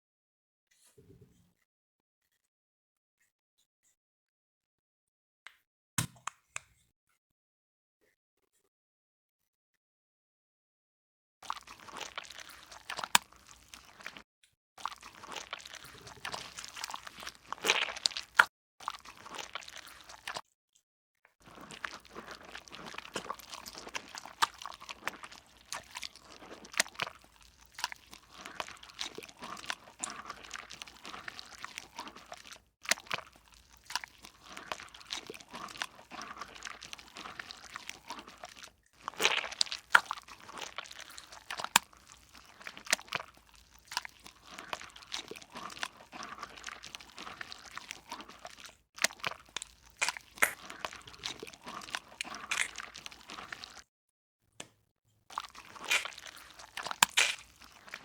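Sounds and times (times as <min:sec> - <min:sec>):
slime squeezed by hand: 0:15.0 - 0:20.4, 0:21.4 - 0:53.8, 0:55.4 - 0:58.0.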